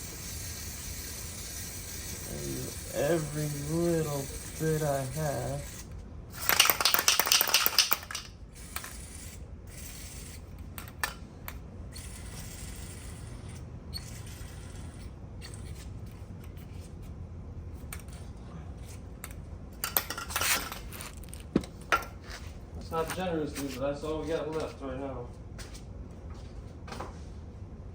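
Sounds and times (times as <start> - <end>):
aerosol spray hissing: 0.0 - 5.9.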